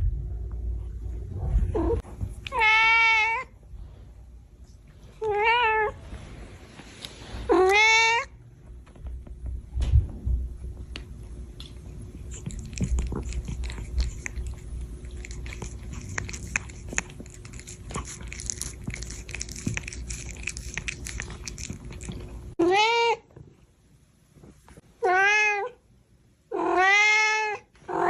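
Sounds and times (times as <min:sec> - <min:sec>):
cat chewing crunchily: 0:11.0 - 0:22.6.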